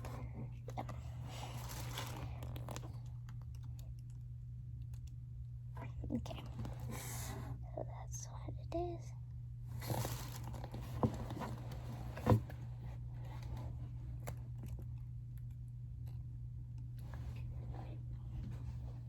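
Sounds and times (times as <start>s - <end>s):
steady low hum: 0.0s - 19.0s
packaging crinkling: 0.8s - 3.8s, 9.8s - 11.7s.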